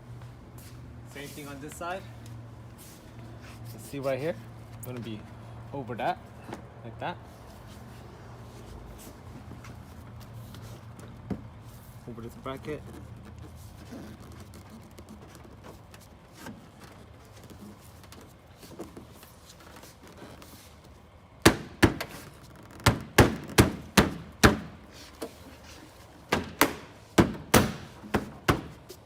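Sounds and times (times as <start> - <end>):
hand knocking plastic bumper: 26.3 - 28.9.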